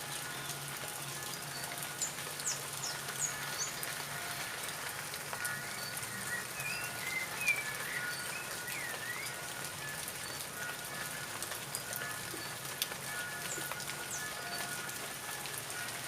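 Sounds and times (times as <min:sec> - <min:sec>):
rain falling: 0:00.0 - 0:16.0
bird chirping: 0:05.4 - 0:09.4.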